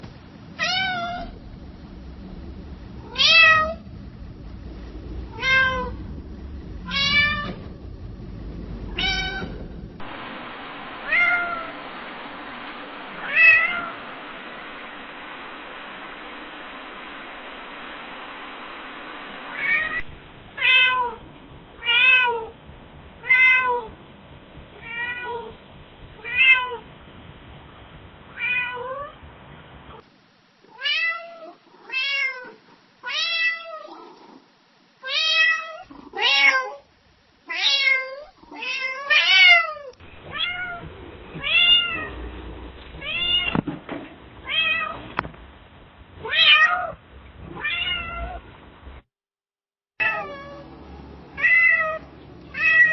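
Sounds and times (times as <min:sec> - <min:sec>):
cat meowing: 0:00.6 - 0:01.4, 0:05.3 - 0:06.0, 0:08.9 - 0:09.6, 0:24.8 - 0:25.6, 0:35.0 - 0:36.8, 0:37.5 - 0:42.2, 0:46.2 - 0:48.4, 0:50.0 - 0:50.7, 0:51.4 - 0:52.9.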